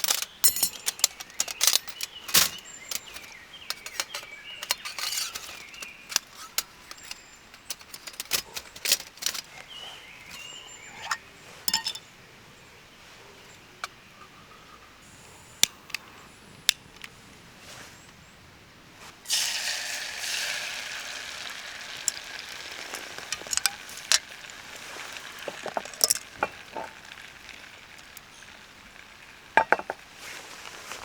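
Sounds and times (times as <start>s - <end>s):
utensil clinks and taps: 0.0s - 9.5s, 23.3s - 27.0s, 29.6s - 30.0s
light taps and clinks: 0.0s - 9.6s, 22.8s - 27.3s, 29.6s - 30.0s
food sizzling in a hot pan: 19.3s - 30.2s.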